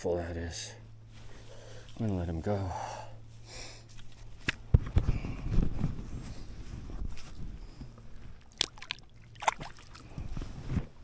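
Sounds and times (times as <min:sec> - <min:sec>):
low thumps and rustling: 0:03.9 - 0:08.4, 0:10.1 - 0:11.0
water sloshing: 0:08.0 - 0:10.4.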